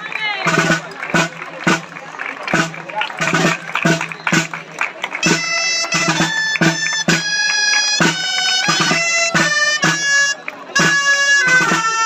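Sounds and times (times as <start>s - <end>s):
steady drumbeat: 0.0s - 12.0s
shawm playing reedy melody: 5.2s - 12.0s.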